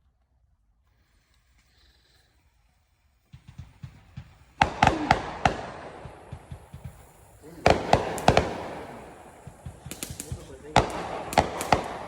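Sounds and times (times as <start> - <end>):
fireworks crackling: 0.0 - 12.0
fireworks bangs: 3.2 - 12.0.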